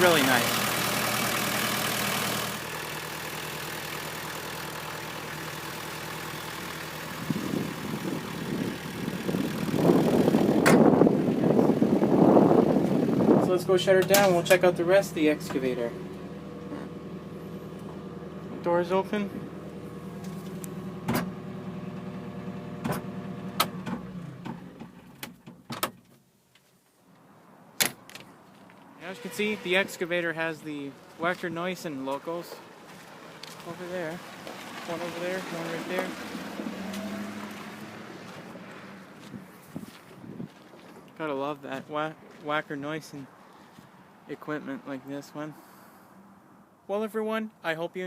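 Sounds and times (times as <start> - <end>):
diesel engine idling: 0.0 - 24.4.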